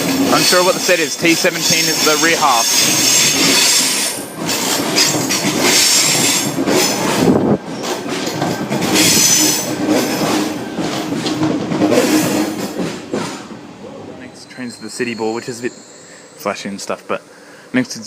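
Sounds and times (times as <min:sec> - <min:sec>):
wheels clacking over rail joints: 0:00.0 - 0:13.6
train wheels rumbling on rail: 0:00.0 - 0:18.0
high wheel squeal: 0:00.4 - 0:07.0, 0:14.4 - 0:16.7.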